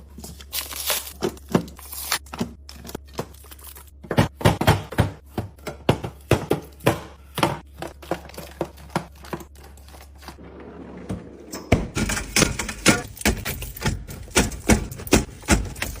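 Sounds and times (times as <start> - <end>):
containers knocking and clattering: 11.1 - 16.0.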